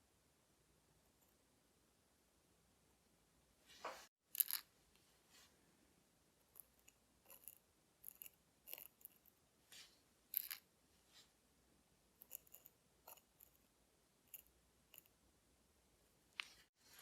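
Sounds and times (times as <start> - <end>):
small metal tools clicking and scraping: 4.3 - 4.7, 6.6 - 9.3, 10.3 - 10.6, 12.2 - 13.7, 14.3 - 15.1.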